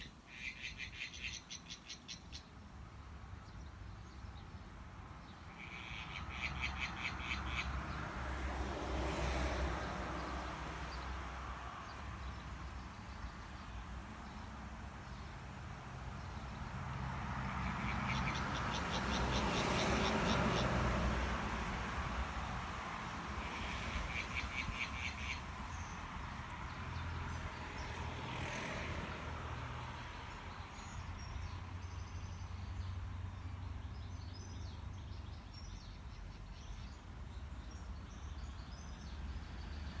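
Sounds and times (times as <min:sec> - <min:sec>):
rush of passing traffic: 0:00.1 - 0:40.0
frogs croaking: 0:05.5 - 0:08.0, 0:17.3 - 0:21.4, 0:23.1 - 0:26.0.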